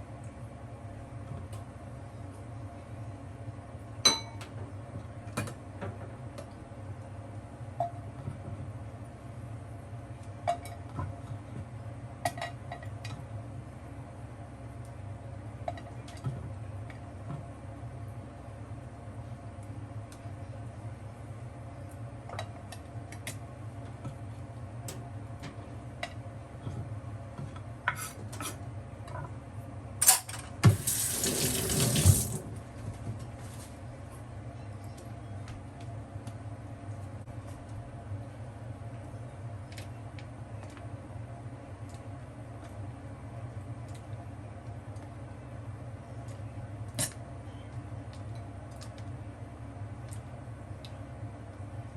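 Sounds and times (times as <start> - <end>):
tap running water: 30.6 - 32.6.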